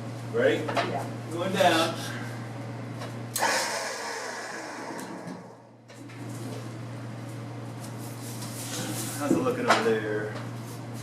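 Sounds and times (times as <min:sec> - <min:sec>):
steady low hum: 0:00.0 - 0:11.0
lift mechanical rush: 0:03.3 - 0:05.9.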